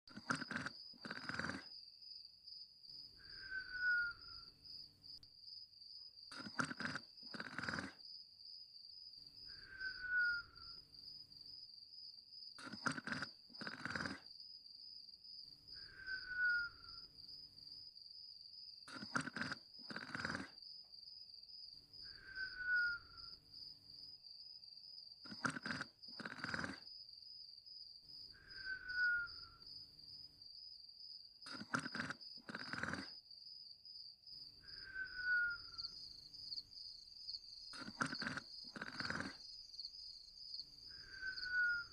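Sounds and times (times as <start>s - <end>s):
person snoring with whistle: 0.1s - 1.7s, 3.2s - 4.5s, 6.3s - 8.0s, 9.5s - 10.8s, 12.6s - 14.3s, 15.8s - 17.1s, 18.9s - 20.6s, 22.0s - 23.4s, 25.2s - 26.9s, 28.3s - 29.7s, 31.4s - 33.2s, 34.6s - 36.0s, 37.7s - 39.4s, 40.9s - 41.9s
crickets chirping: 0.1s - 41.9s.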